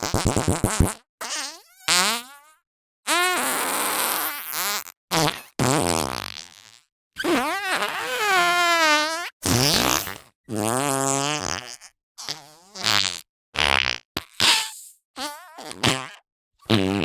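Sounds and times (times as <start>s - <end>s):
cartoon fart sound effects: 0.0s - 17.0s.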